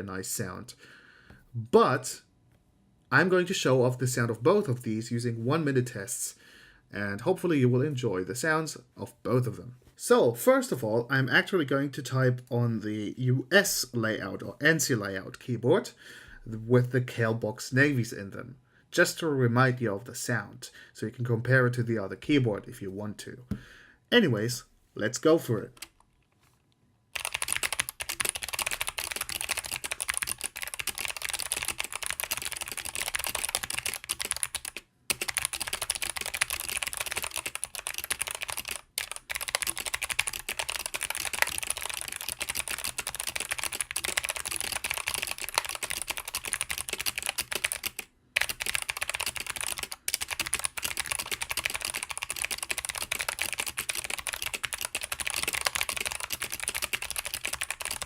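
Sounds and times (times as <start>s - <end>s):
fast typing on clicky keyboard: 27.2s - 58.0s.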